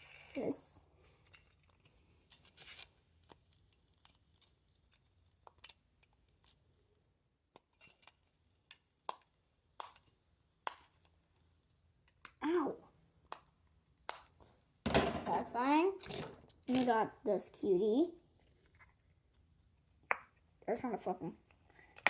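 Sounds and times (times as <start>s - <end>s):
fidget toys clicking and tapping: 2.7s - 6.6s, 7.5s - 11.2s.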